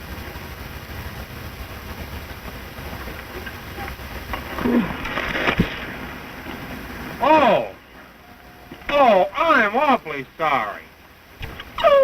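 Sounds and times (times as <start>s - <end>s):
crackling film soundtrack hiss: 0.0s - 12.0s.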